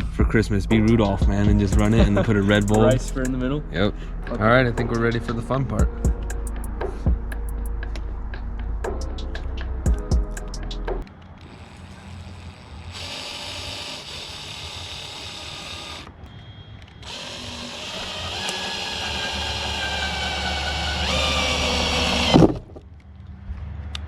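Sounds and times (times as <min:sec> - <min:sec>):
power drill boring through metal: 0:11.4 - 0:16.1, 0:17.0 - 0:22.5.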